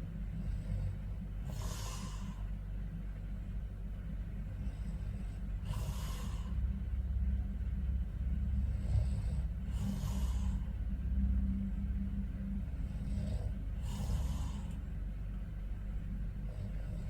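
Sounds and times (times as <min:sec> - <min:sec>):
man snoring: 0:00.4 - 0:02.4, 0:04.6 - 0:06.6, 0:08.5 - 0:10.7, 0:12.6 - 0:14.8, 0:16.4 - 0:17.0
breathy out-breath: 0:00.4 - 0:02.5, 0:04.6 - 0:06.6, 0:08.5 - 0:10.8, 0:12.6 - 0:14.9.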